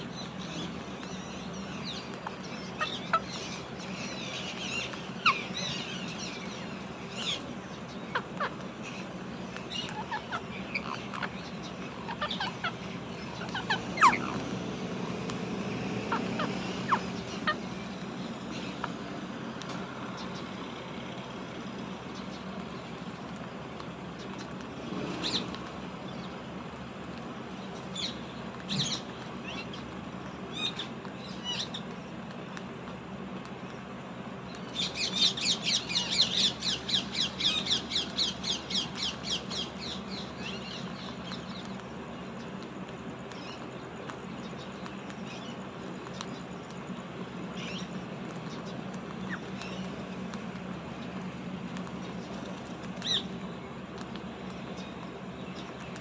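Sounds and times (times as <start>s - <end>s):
low background hum: 0.0s - 56.0s
parrot squawking: 8.0s - 9.0s, 9.7s - 14.5s, 16.0s - 19.0s.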